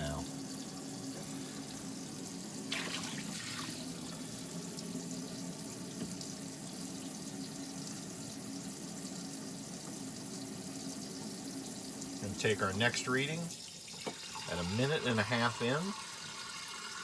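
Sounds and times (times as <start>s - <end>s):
faucet running water: 0.0s - 17.0s
water splash: 2.7s - 3.9s.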